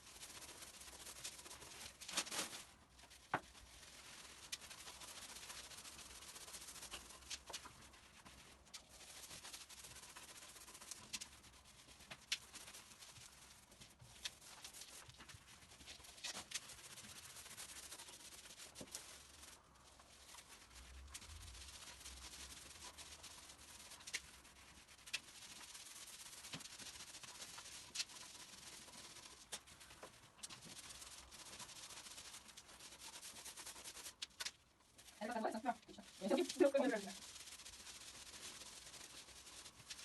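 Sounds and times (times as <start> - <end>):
paint rubbing on a wall: 0.0 - 40.0.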